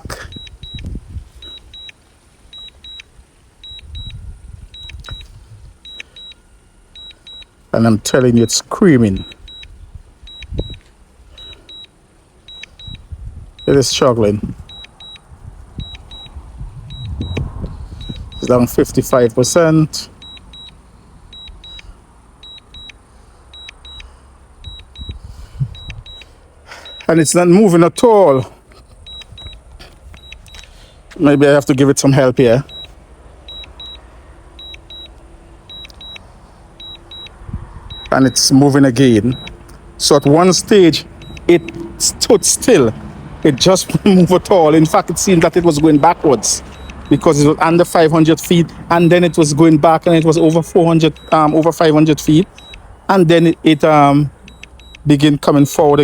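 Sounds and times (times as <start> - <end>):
wind rumble on microphone: 0.0 - 1.9, 2.5 - 6.0, 9.2 - 10.9, 12.8 - 19.2, 24.5 - 26.2, 35.7 - 38.2
remote controller double beeps: 0.0 - 6.4, 7.0 - 7.6, 8.3 - 10.8, 11.4 - 11.9, 12.5 - 23.0, 23.6 - 28.2, 29.0 - 55.9.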